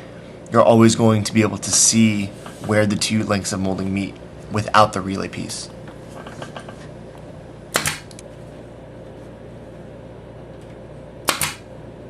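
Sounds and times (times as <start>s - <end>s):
nail gun shot: 7.7s - 8.1s, 11.2s - 11.7s.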